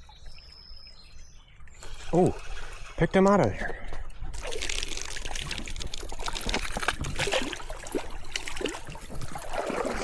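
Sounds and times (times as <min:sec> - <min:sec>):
stream water trickling: 0:00.0 - 0:10.0
fish splashing: 0:04.4 - 0:10.0.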